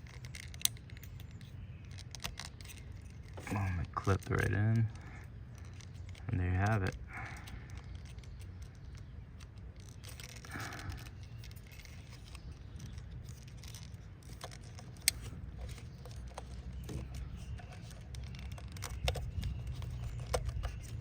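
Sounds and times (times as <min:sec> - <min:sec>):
wiring connectors clicking and rustling: 0:00.0 - 0:21.0.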